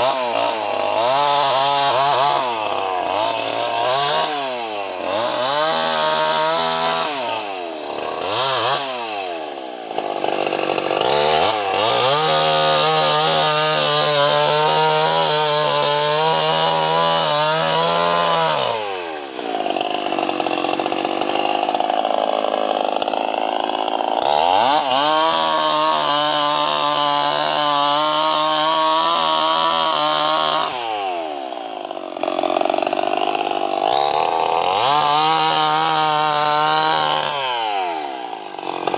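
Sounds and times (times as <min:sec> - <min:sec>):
chainsaw cutting wood: 0:00.0 - 0:38.9
chainsaw revving: 0:00.0 - 0:38.9.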